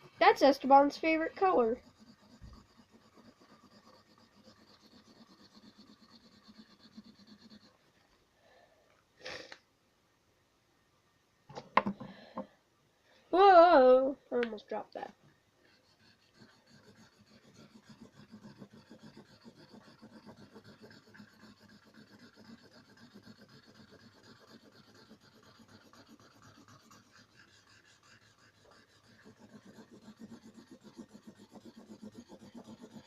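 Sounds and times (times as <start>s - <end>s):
marker scribbling on paper: 0.0s - 7.8s, 15.6s - 33.0s.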